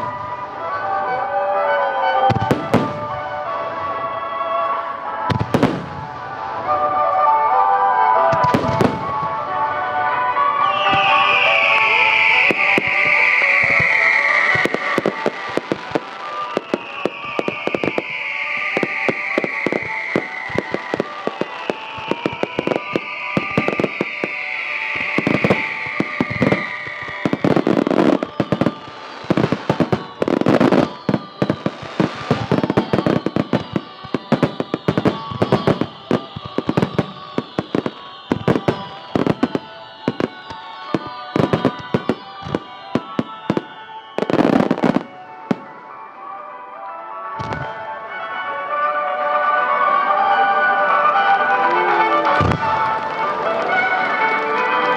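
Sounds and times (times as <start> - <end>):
falling firework whistles: 0.0 - 7.2, 8.3 - 9.8, 10.4 - 46.2, 47.4 - 48.0, 50.1 - 54.9
firework shell bursts and crackling: 10.6 - 46.0, 51.1 - 54.9.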